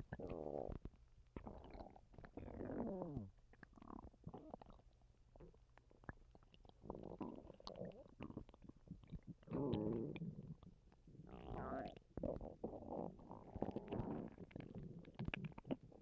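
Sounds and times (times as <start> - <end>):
stomach gurgling: 0.0 - 16.0.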